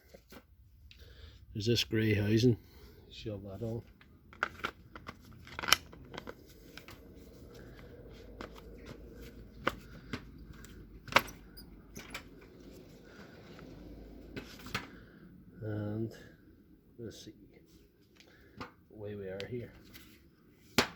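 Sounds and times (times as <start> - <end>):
plastic parts clicking and knocking: 3.9 - 7.0, 9.6 - 12.4.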